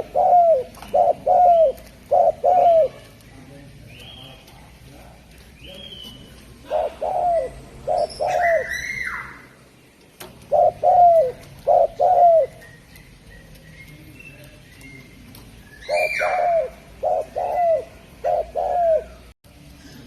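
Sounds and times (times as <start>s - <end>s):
dove cooing: 0.0s - 3.1s, 6.2s - 9.4s, 10.3s - 13.6s, 15.8s - 19.3s
drawn-out bird call: 0.0s - 3.2s, 5.7s - 9.6s, 10.4s - 19.2s.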